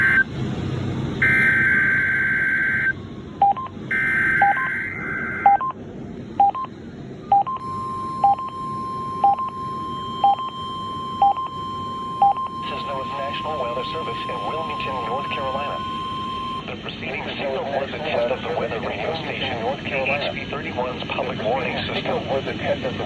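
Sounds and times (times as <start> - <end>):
steady alarm tone: 0.0 - 0.3, 1.2 - 5.8, 7.3 - 16.7
short beeps: 1.2 - 5.8, 7.3 - 16.7.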